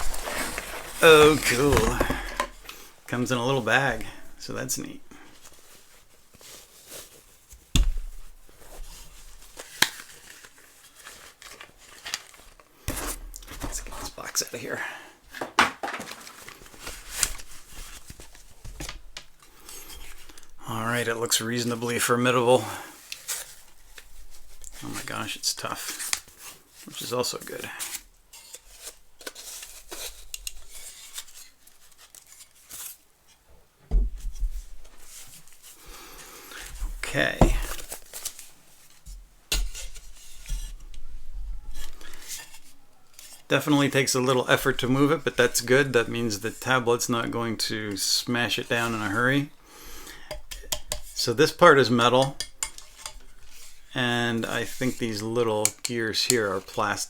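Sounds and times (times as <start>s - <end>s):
packaging rustle: 0.0s - 2.9s, 8.6s - 14.2s, 15.8s - 20.6s, 22.9s - 33.4s, 34.2s - 39.0s
heavy thud: 33.9s - 34.4s.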